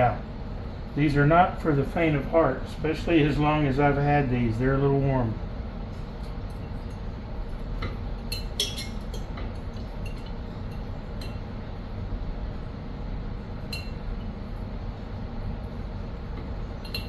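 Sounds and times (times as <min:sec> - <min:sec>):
utensil clinking against glass jar: 0:08.3 - 0:09.3.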